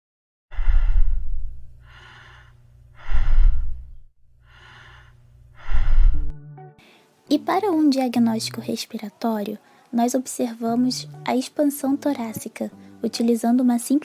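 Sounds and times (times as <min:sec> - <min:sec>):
breath sounds through stethoscope: 0:00.5 - 0:07.1.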